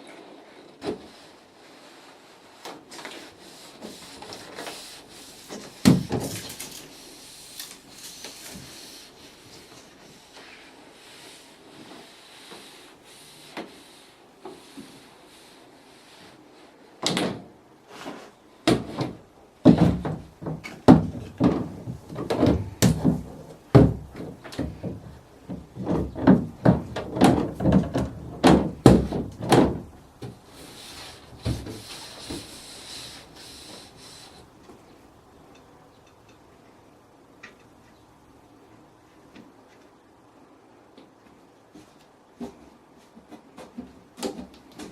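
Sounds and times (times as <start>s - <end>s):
rubbing on glass: 1.9s - 16.0s, 30.3s - 34.6s
knocks and thuds on window: 18.7s - 30.4s.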